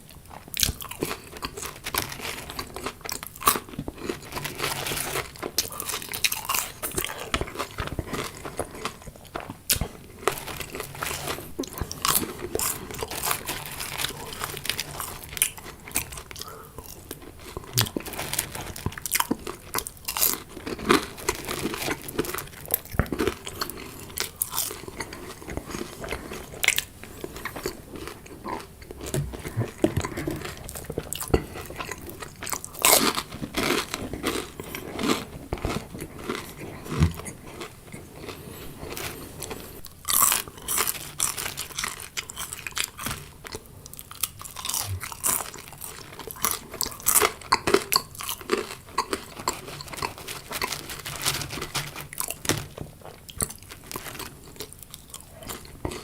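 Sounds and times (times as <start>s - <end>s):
chewing crunchy food: 0.0s - 56.0s.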